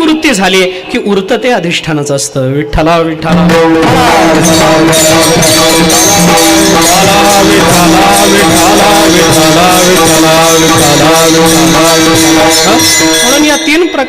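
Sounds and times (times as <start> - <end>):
jingling percussion: 3.2 - 14.0
voices singing devotional line: 3.2 - 14.0
held drone note: 3.5 - 13.7.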